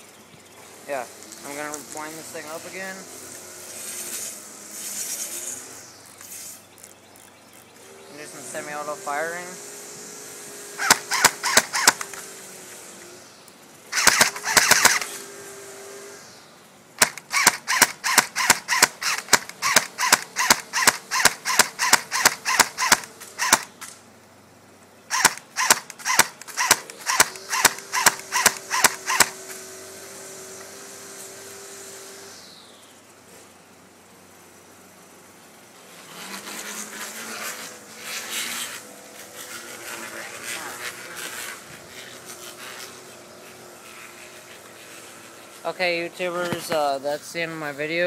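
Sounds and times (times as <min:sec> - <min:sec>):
airsoft rifle shots: 0:10.8 - 0:12.3, 0:13.9 - 0:15.2, 0:17.0 - 0:23.9, 0:25.1 - 0:29.4.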